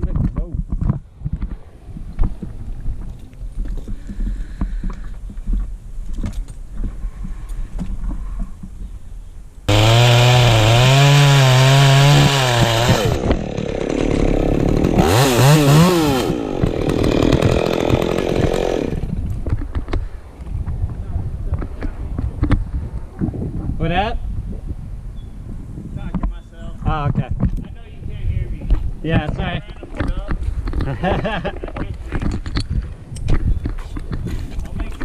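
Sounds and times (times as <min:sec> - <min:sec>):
wind noise: 0:00.0 - 0:09.7, 0:18.8 - 0:35.0
chainsaw revving: 0:09.7 - 0:19.2.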